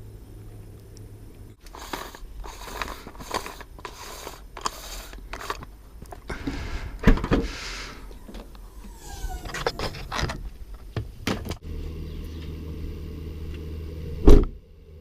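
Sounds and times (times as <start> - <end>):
short crunching strokes: 1.6 - 11.0.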